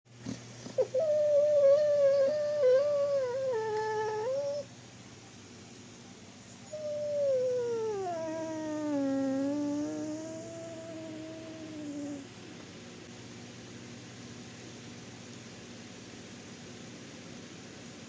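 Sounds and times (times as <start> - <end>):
dog whining in sleep: 0.3 - 4.7, 6.6 - 12.3.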